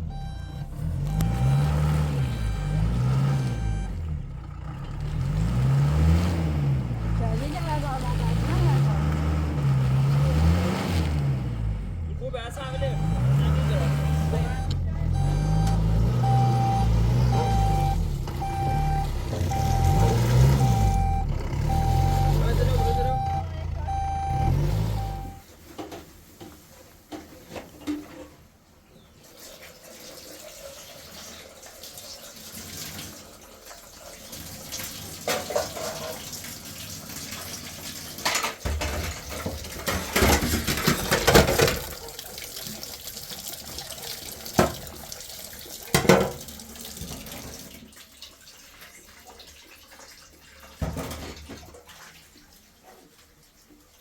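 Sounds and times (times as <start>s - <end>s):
running water splashing: 7.0s - 11.5s
knocks and clatters: 38.2s - 42.0s.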